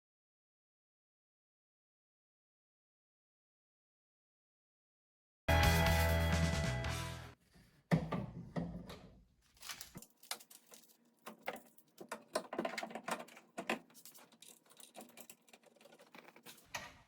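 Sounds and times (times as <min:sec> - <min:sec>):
tools clicking and clacking: 0:09.6 - 0:17.0.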